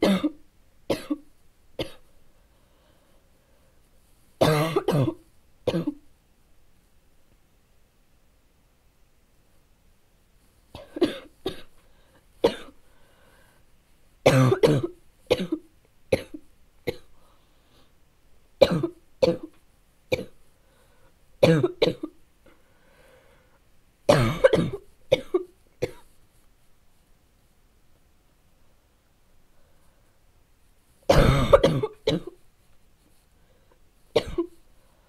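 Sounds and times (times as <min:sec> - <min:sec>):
person coughing harshly: 0:00.0 - 0:01.2, 0:01.8 - 0:02.1, 0:04.4 - 0:06.0, 0:10.8 - 0:11.7, 0:12.4 - 0:12.8, 0:14.3 - 0:17.1, 0:18.6 - 0:19.5, 0:21.4 - 0:22.2, 0:24.1 - 0:26.1, 0:31.1 - 0:32.4, 0:34.2 - 0:34.6.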